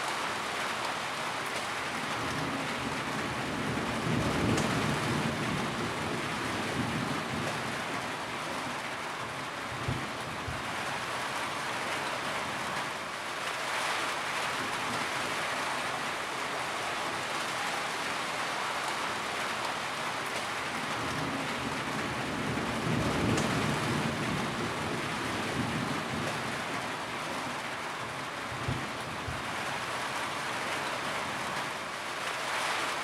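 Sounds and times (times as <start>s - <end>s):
rain hiss: 0.0s - 33.0s
low roll of thunder: 2.2s - 8.0s, 20.9s - 26.8s.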